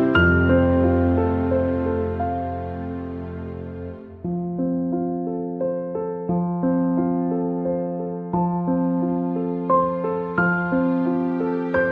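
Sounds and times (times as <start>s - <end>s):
gentle electric piano: 0.0s - 3.5s.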